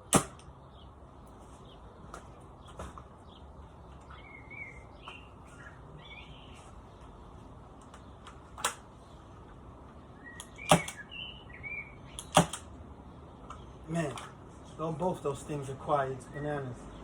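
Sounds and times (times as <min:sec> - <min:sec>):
birds chirping: 0:00.0 - 0:17.0
suppressed airsoft rifle shots: 0:00.1 - 0:00.5, 0:10.6 - 0:11.0, 0:12.3 - 0:12.7.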